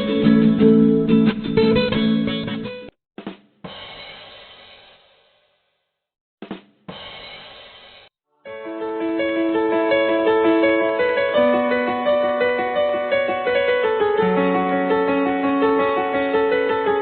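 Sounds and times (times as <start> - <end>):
piano-like keyboard melody: 8.4 - 17.0.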